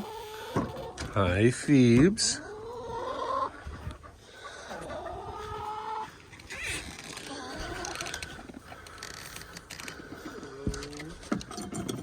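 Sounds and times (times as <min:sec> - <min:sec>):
hens clucking: 0:00.0 - 0:12.0
hen drawn-out rising calls: 0:02.4 - 0:08.4.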